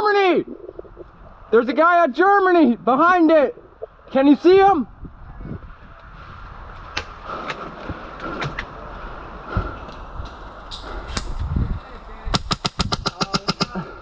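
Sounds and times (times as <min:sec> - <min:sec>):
airsoft gun shots: 0:12.3 - 0:13.3.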